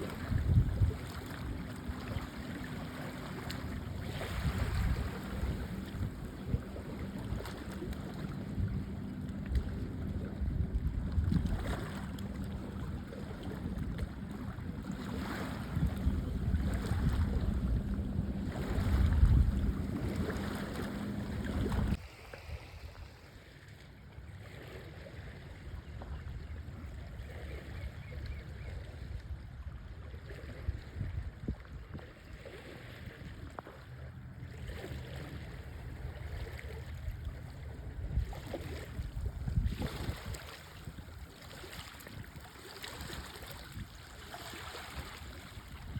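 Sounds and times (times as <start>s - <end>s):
wind buffeting microphone: 0.0s - 2.4s, 3.4s - 22.0s, 37.0s - 42.4s, 44.9s - 45.9s
steady low hum: 0.0s - 22.0s
wash of water: 0.0s - 22.8s.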